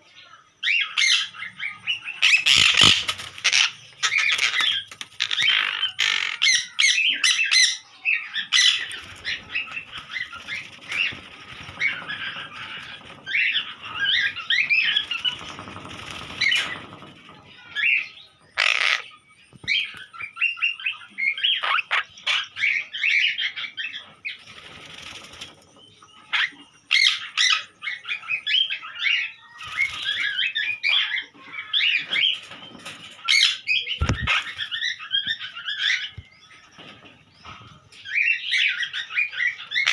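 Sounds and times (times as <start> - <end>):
loud squawk: 2.2 - 7.8, 18.6 - 19.2
parrots squawking: 2.2 - 7.8, 18.6 - 19.2, 21.3 - 23.8, 38.6 - 39.9.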